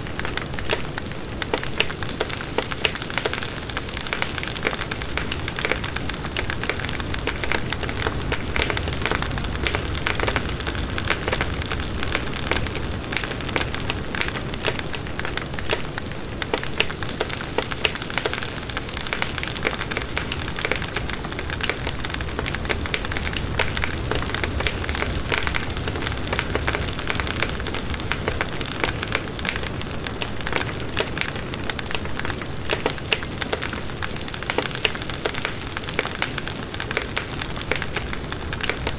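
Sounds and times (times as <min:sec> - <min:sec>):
bonfire crackling: 0:00.0 - 0:38.9
pops and snaps of fire: 0:00.0 - 0:38.9.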